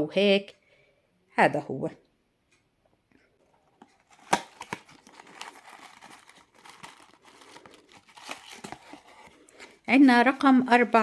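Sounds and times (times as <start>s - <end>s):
paper crinkling and rustling: 3.4s - 11.0s
cardboard compartment snapping open: 3.8s - 9.3s.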